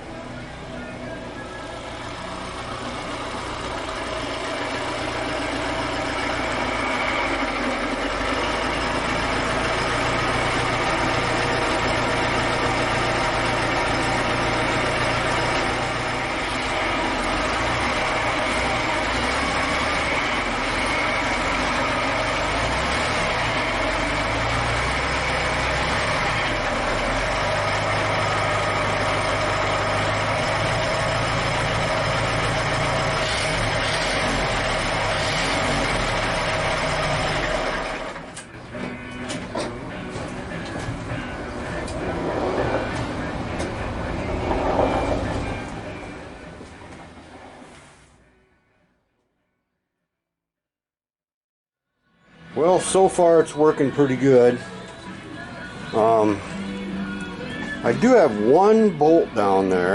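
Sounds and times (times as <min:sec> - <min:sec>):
car engine idling roughly: 0:00.3 - 0:39.2.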